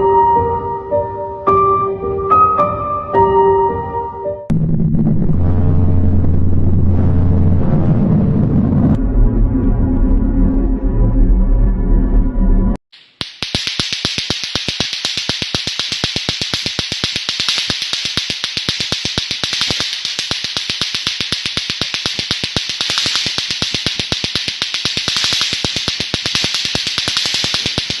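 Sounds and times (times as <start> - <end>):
rapid clicks: 13.0 - 28.0
steady high hiss: 13.0 - 28.0.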